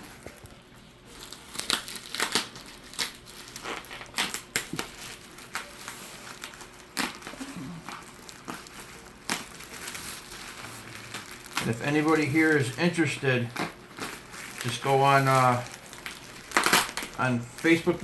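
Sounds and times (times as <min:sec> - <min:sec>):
packing paper crumpling and tearing: 0:00.0 - 0:18.0.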